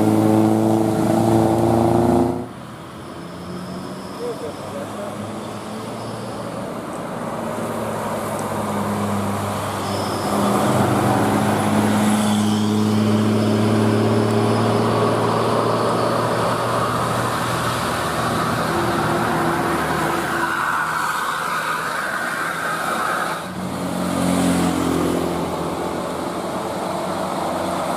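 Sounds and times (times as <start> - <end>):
bus diesel engine droning: 0.0 - 21.8.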